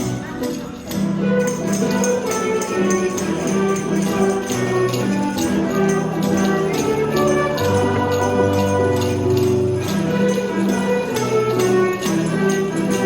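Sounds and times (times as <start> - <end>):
music with held chords: 0.0 - 13.0.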